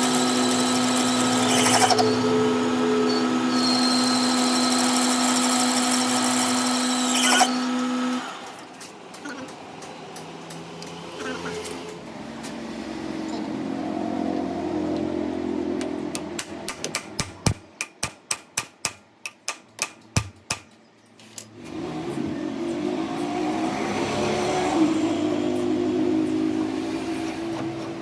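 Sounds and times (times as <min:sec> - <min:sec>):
motor-driven machine running: 0:00.0 - 0:08.4.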